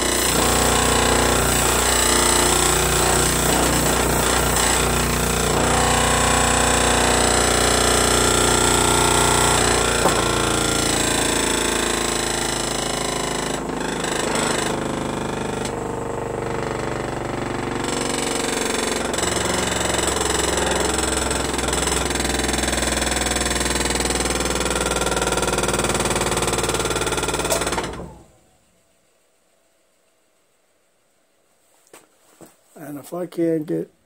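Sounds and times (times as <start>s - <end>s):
disc sander rattling: 0.0s - 11.8s, 16.8s - 24.3s.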